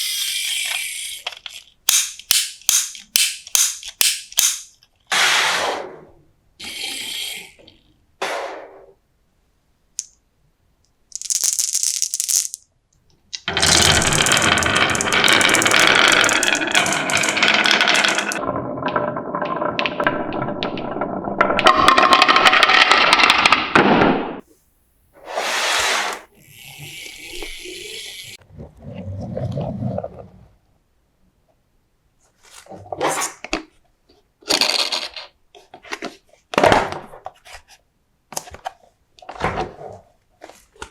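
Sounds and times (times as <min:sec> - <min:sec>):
marbles rattling down wooden run: 0:11.1 - 0:12.6, 0:13.4 - 0:23.7
brief hissing bursts: 0:25.2 - 0:26.3.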